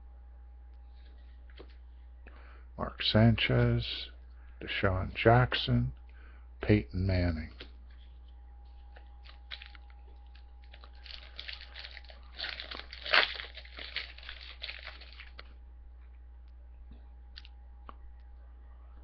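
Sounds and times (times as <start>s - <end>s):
wrapper tearing and crinkling: 9.2s - 15.5s.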